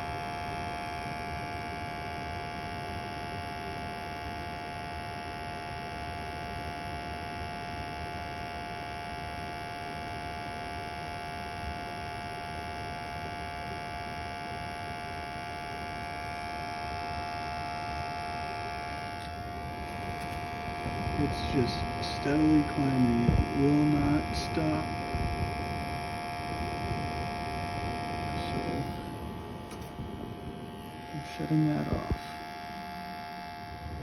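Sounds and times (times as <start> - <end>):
gas furnace humming: 0.0 - 34.0
high-pitched whine: 15.3 - 34.0.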